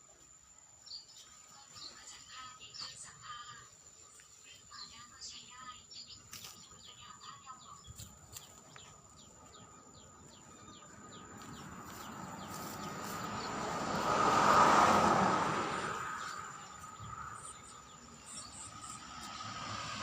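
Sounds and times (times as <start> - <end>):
vehicle passing by: 8.6 - 20.0.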